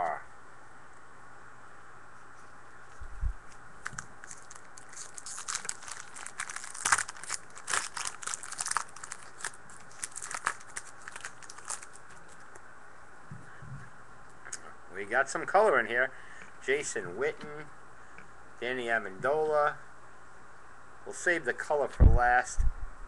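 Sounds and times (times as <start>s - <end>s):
foil wrapper tearing and crinkling: 3.8s - 12.4s.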